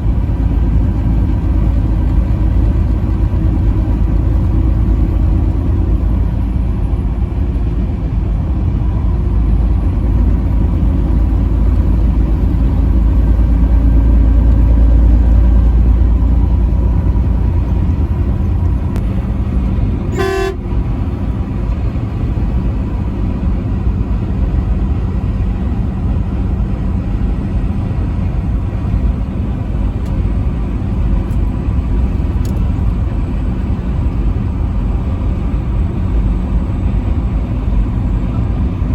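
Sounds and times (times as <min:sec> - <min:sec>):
truck rumbling: 0:00.0 - 0:38.9
truck horn blast: 0:20.0 - 0:21.1.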